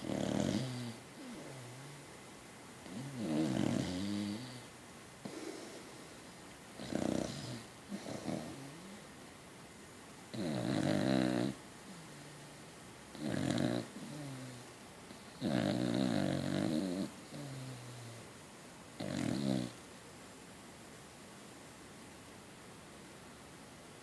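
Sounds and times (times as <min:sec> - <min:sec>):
dog snoring loudly: 0:00.0 - 0:02.0, 0:02.8 - 0:04.7, 0:06.8 - 0:09.0, 0:10.3 - 0:11.6, 0:13.1 - 0:14.6, 0:15.2 - 0:18.2, 0:19.0 - 0:19.8
dog breathing: 0:05.2 - 0:08.8.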